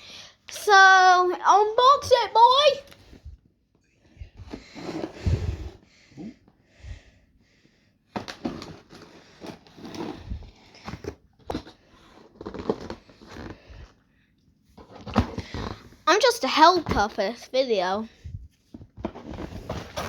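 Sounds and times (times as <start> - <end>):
packaging rustling and scraping: 4.4 - 5.8, 8.1 - 14.0, 14.7 - 17.4, 18.5 - 20.0.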